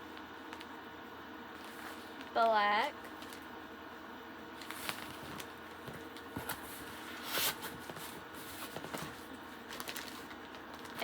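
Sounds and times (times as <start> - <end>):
packaging rustling and clicking: 4.6 - 11.0.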